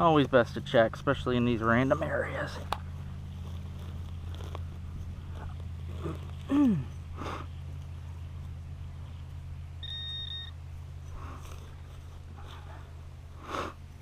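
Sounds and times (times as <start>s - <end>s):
steady low hum: 0.0s - 14.0s
metal detector beep: 9.8s - 10.6s.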